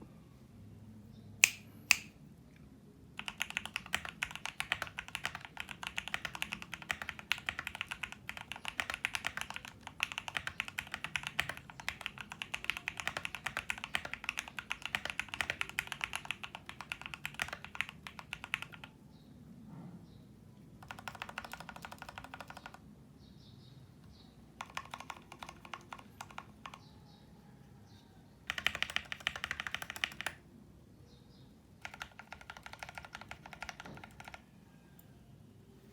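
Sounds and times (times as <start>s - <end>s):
sharp click: 1.4s - 2.2s
mechanical keyboard typing: 3.2s - 19.0s, 20.8s - 22.8s, 24.6s - 26.9s, 28.4s - 30.4s, 31.8s - 34.6s.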